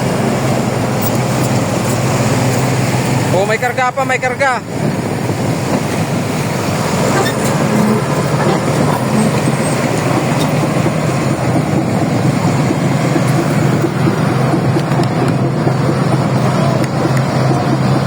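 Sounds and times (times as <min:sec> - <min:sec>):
heavy diesel engine running: 0:00.0 - 0:18.0.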